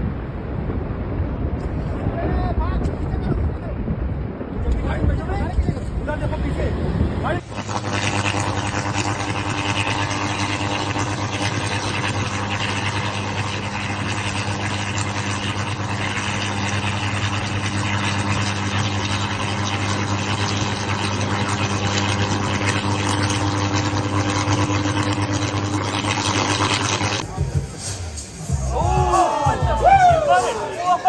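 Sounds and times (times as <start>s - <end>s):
dense rushing noise: 0.0s - 11.6s, 25.6s - 31.0s
engine running steadily: 0.0s - 31.0s.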